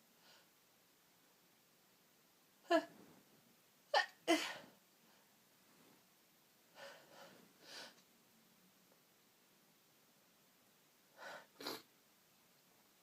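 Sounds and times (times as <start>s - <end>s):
soft breathy sounds: 6.7s - 8.1s, 11.1s - 11.9s.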